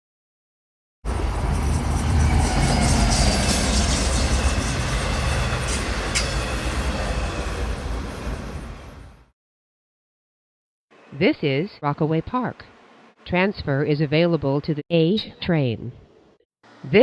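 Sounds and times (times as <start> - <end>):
high wheel squealing: 1.1 - 9.1
subway train rumbling on rails: 1.1 - 9.3.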